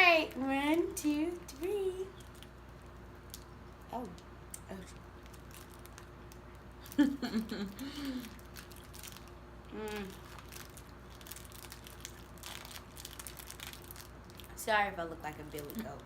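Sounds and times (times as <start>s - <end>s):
people chewing snack cake: 2.1s - 14.6s
wrapper crinkling: 5.1s - 7.1s, 7.8s - 16.0s
person humming mm: 9.7s - 10.2s.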